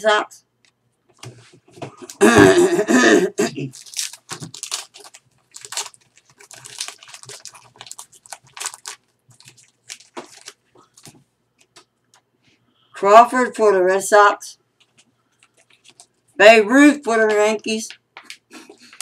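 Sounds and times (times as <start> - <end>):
wrapper crinkling: 3.7 - 11.2, 14.8 - 16.4.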